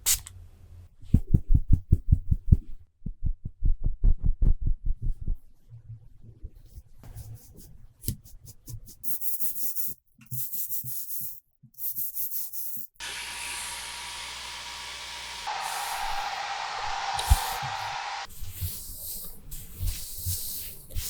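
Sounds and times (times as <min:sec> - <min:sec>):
electric clipper whir: 0:13.0 - 0:18.3.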